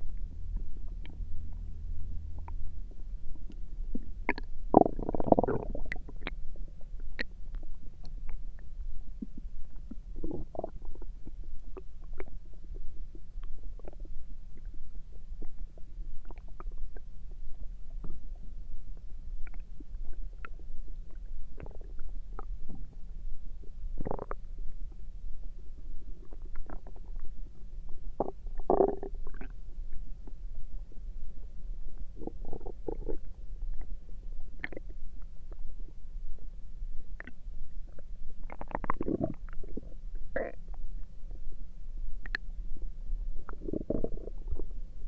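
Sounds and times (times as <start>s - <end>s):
stomach gurgling: 3.4s - 18.4s, 19.4s - 24.6s, 26.0s - 30.4s, 32.0s - 35.6s, 37.2s - 41.4s, 42.2s - 42.6s, 43.4s - 44.9s.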